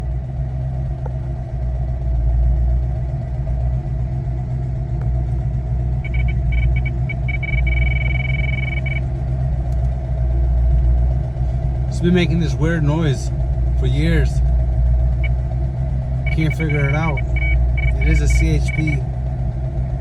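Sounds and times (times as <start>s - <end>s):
car engine rumble: 0.0s - 20.0s
high electronic beeps: 6.0s - 9.1s, 16.3s - 19.0s.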